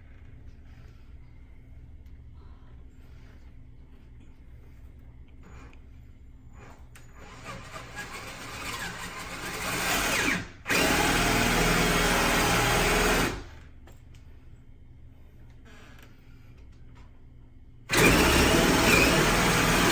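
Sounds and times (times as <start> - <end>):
power drill boring through wood: 7.2 - 13.6, 17.9 - 19.9.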